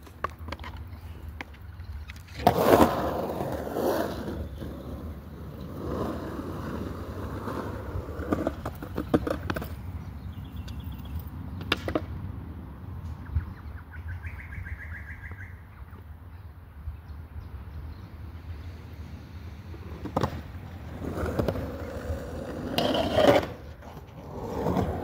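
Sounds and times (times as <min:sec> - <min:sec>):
skateboard clacks: 0:00.0 - 0:09.8, 0:11.6 - 0:12.2, 0:19.8 - 0:25.0
skateboard wheels rolling: 0:00.0 - 0:10.8, 0:11.6 - 0:12.3, 0:18.3 - 0:25.0.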